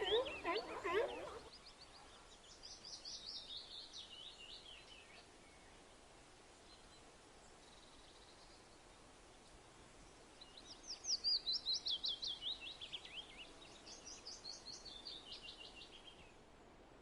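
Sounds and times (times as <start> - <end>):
songbird whistling: 0.0 - 1.5.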